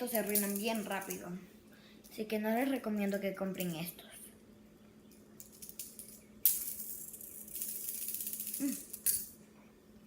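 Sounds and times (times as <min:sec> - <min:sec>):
fidget spinner metallic rattle: 0:00.0 - 0:01.3.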